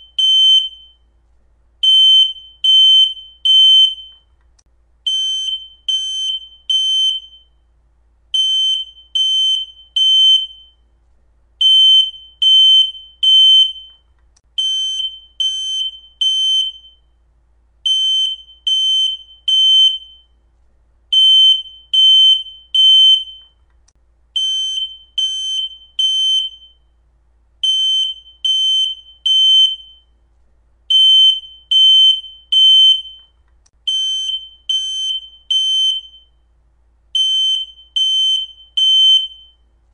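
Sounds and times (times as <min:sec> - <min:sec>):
smoke alarm beeping: 0:00.0 - 0:01.2, 0:01.8 - 0:04.4, 0:05.1 - 0:07.6, 0:08.4 - 0:10.9, 0:11.6 - 0:17.1, 0:17.9 - 0:20.4, 0:21.1 - 0:23.6, 0:24.4 - 0:26.9, 0:27.6 - 0:30.2, 0:30.9 - 0:36.4, 0:37.2 - 0:39.7.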